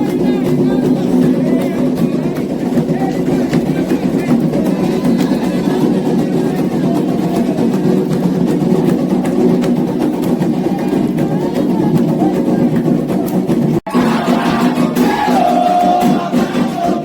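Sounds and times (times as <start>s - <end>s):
ritual drumming: 0.0s - 17.0s
group of voices singing: 13.8s - 17.0s.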